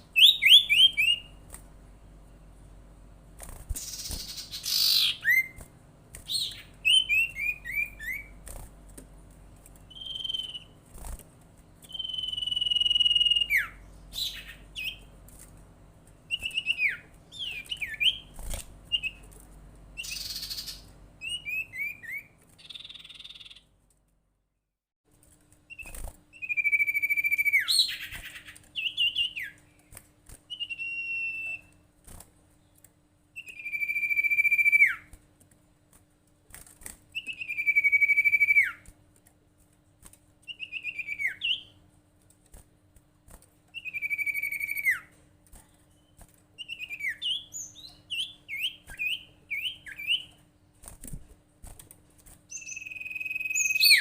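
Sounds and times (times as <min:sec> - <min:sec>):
bird whistling song: 0:00.0 - 0:01.4, 0:03.8 - 0:08.4, 0:09.9 - 0:10.8, 0:11.8 - 0:15.1, 0:16.3 - 0:19.2, 0:20.0 - 0:23.6, 0:25.7 - 0:29.6, 0:30.5 - 0:31.8, 0:33.3 - 0:35.1, 0:37.1 - 0:38.8, 0:40.5 - 0:41.8, 0:43.7 - 0:45.1, 0:45.9 - 0:50.4, 0:52.5 - 0:54.0
faint steady hum: 0:00.0 - 0:54.0.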